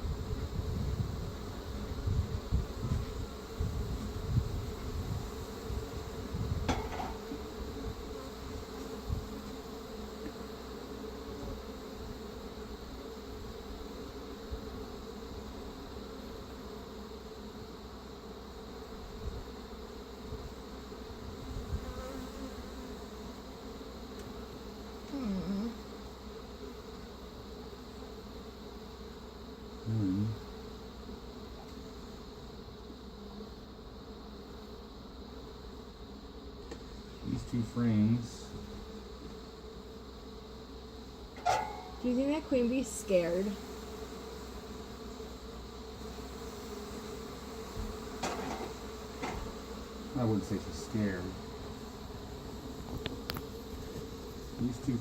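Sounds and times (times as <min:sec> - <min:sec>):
bees buzzing: 0:00.0 - 0:55.0
knocks: 0:06.7 - 0:07.2.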